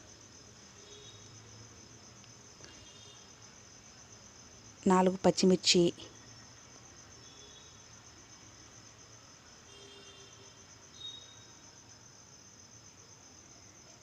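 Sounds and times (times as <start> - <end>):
insect chirping trill: 0.0 - 14.0.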